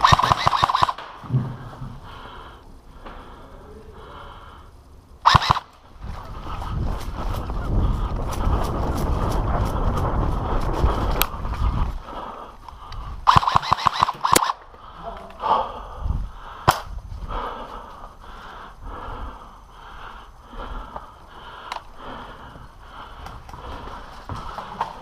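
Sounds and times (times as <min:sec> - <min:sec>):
airsoft guns firing: 0:00.0 - 0:01.5, 0:05.2 - 0:05.8, 0:13.2 - 0:14.7, 0:16.6 - 0:16.9.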